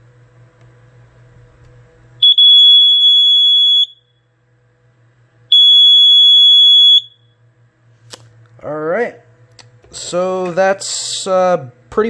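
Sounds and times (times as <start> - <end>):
alarm long high-pitched beeps: 5.5 - 7.3.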